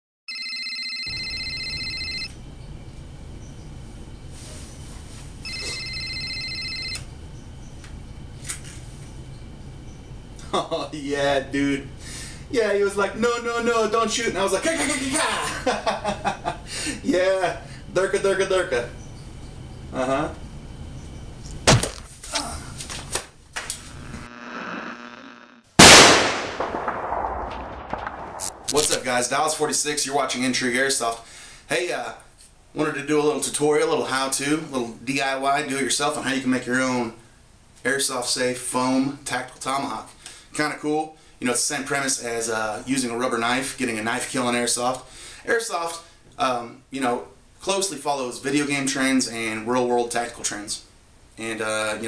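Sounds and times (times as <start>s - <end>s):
telephone ringing: 0.3s - 2.4s, 5.4s - 7.1s
steady pitched hum: 1.1s - 32.1s
loud gunshot-like bang: 21.6s - 22.0s, 25.8s - 28.8s.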